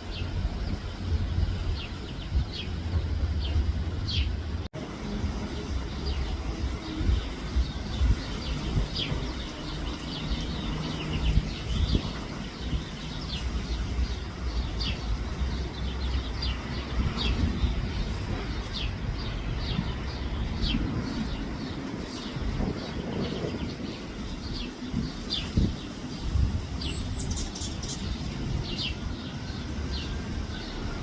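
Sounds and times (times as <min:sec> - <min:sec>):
low rumble: 0:00.0 - 0:10.0
birds chirping: 0:00.0 - 0:31.0.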